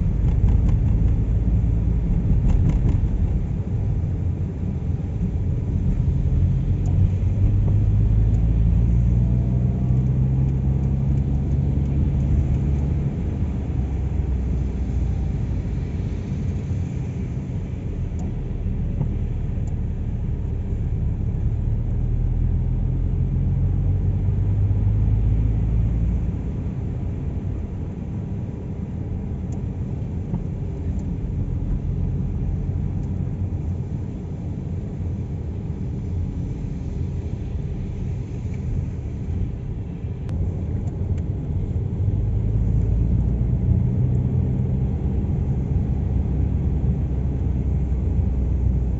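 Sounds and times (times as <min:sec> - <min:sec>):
road rumble: 0:00.0 - 0:48.9.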